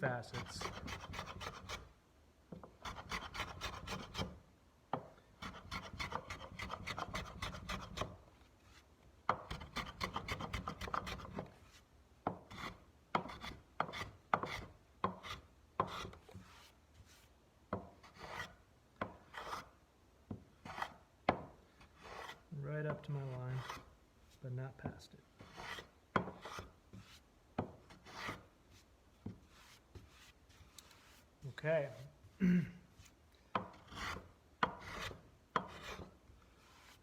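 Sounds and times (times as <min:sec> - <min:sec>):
block plane shaving wood: 0:00.3 - 0:01.9, 0:02.8 - 0:04.3, 0:05.4 - 0:08.2, 0:09.3 - 0:11.4, 0:22.0 - 0:22.4, 0:25.4 - 0:27.2, 0:28.0 - 0:28.4, 0:33.8 - 0:37.0.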